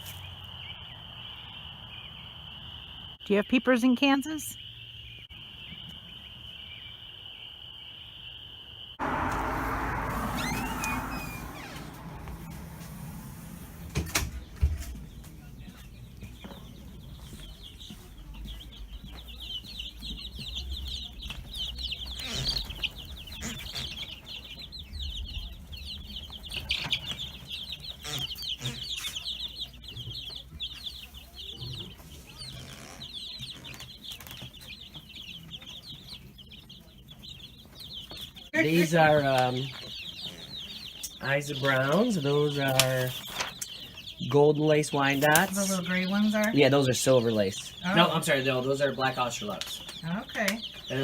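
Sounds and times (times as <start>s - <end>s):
chicks peeping: 0.0s - 51.0s
steady low hum: 9.0s - 15.7s.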